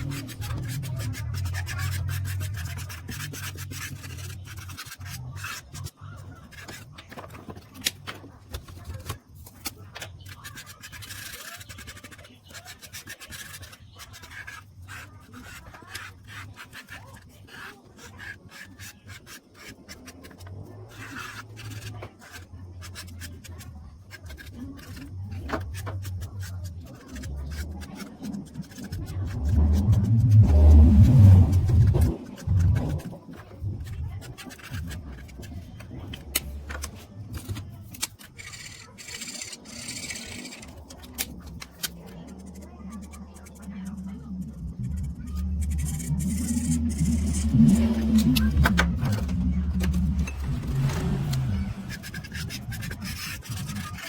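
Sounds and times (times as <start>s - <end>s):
pencil scratching on paper: 0.0s - 54.0s
steady low hum: 19.7s - 54.0s.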